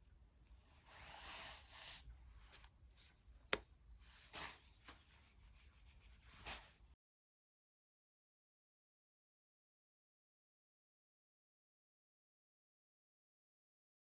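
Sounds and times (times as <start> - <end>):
cards sliding on a table: 0.8 - 3.1.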